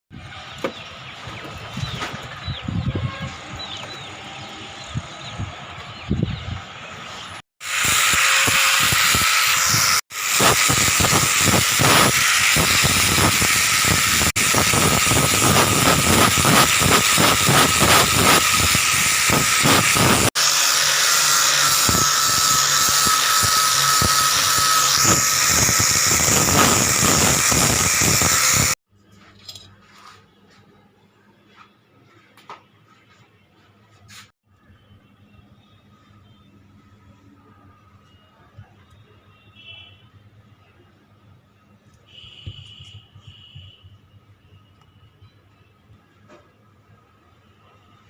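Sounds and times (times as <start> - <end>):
angle grinder scraping metal: 7.6 - 28.8.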